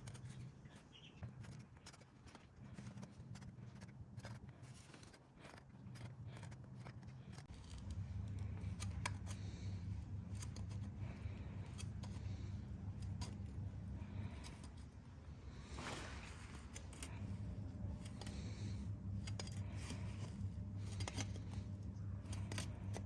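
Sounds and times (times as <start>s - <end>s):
low hum: 5.5s - 23.0s.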